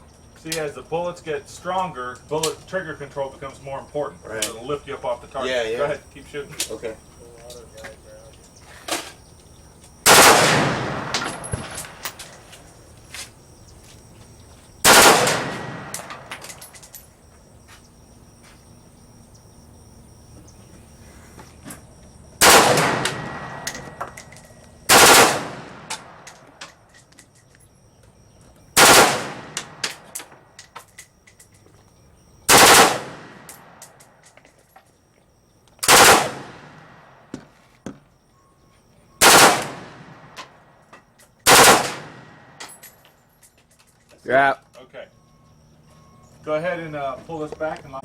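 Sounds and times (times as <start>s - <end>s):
automatic rifle bursts: 10.0s - 12.4s, 14.8s - 16.6s, 22.4s - 24.3s, 24.9s - 26.3s, 28.8s - 30.2s, 32.5s - 33.7s, 35.8s - 36.8s, 39.2s - 40.0s, 41.4s - 42.3s.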